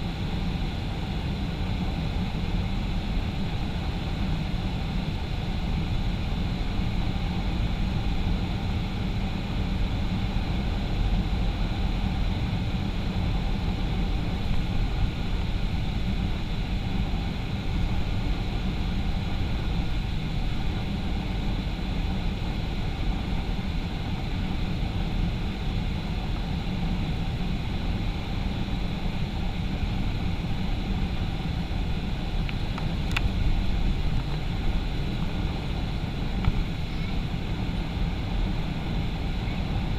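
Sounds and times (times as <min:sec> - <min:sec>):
aircraft cabin engine drone: 0:00.0 - 0:39.9.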